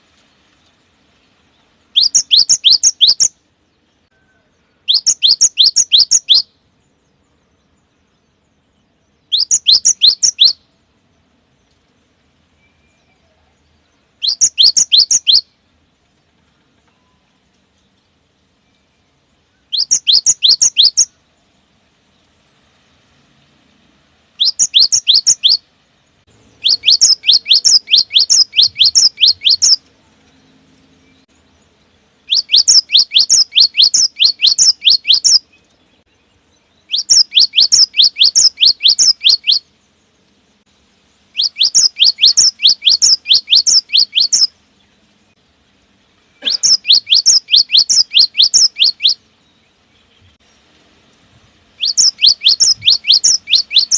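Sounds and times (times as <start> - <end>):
bird singing sharp high notes: 1.9 - 3.3, 4.8 - 6.6, 9.2 - 10.7, 14.2 - 15.5, 19.6 - 21.1, 24.4 - 25.6, 26.3 - 29.8, 32.3 - 35.6, 36.8 - 39.7, 41.3 - 44.5, 46.4 - 49.3, 51.8 - 53.9.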